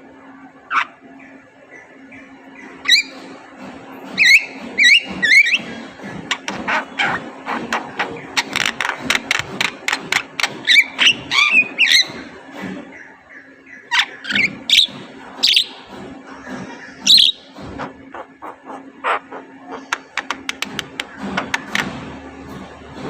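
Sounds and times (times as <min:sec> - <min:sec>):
myna calling: 0:16.9 - 0:21.2.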